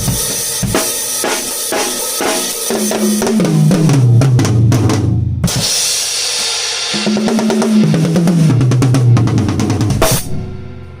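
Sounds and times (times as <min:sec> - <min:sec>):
drum fill on toms: 0:00.0 - 0:05.8, 0:06.5 - 0:10.8
cymbal crash: 0:10.0 - 0:11.0.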